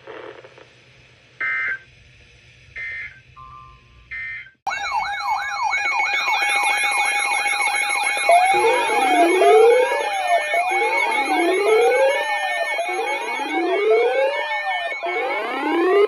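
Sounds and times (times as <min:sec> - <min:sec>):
emergency alert data tones: 0:02.8 - 0:16.0
steady siren tone: 0:02.8 - 0:16.0
siren yelp sweeps: 0:04.2 - 0:16.0
wailing siren: 0:04.7 - 0:16.0.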